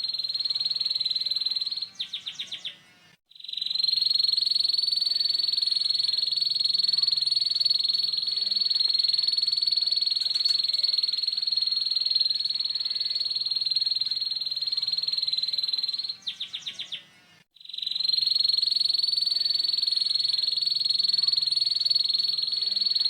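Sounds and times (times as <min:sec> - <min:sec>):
canary trilling: 0:03.4 - 0:23.0.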